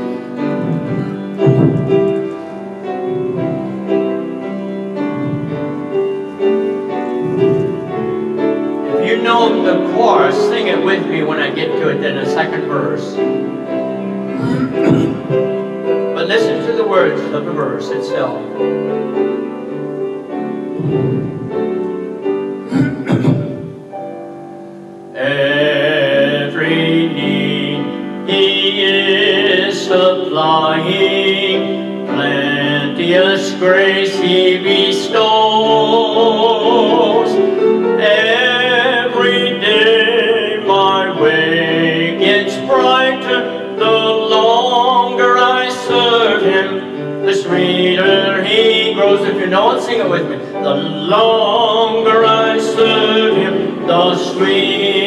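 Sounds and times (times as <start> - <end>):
piano playing slow hymn: 0.0 - 55.0
man singing: 5.0 - 13.4, 14.3 - 15.5, 16.2 - 18.6, 25.1 - 55.0.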